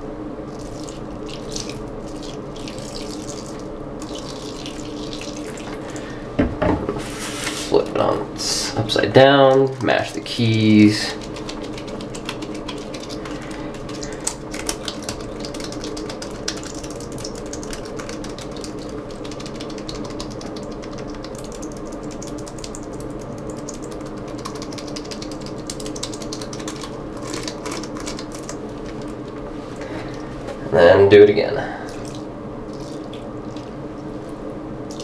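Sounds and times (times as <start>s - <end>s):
steady low hum: 0.0s - 35.0s
laptop keyboard keys clattering: 11.2s - 29.1s.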